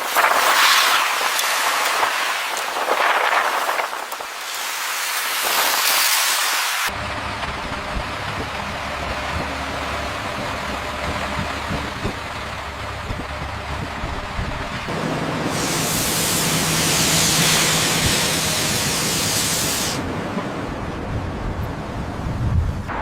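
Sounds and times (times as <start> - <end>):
loud hiss: 0.0 - 6.9, 14.9 - 20.2
heavy machinery running: 6.9 - 22.2.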